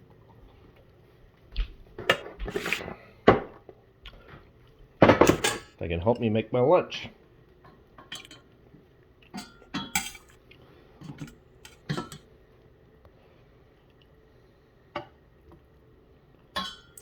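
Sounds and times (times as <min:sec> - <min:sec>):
dishes and utensils clattering: 0:05.0 - 0:05.8, 0:08.0 - 0:08.5, 0:09.3 - 0:10.4, 0:11.0 - 0:12.3, 0:16.6 - 0:17.0.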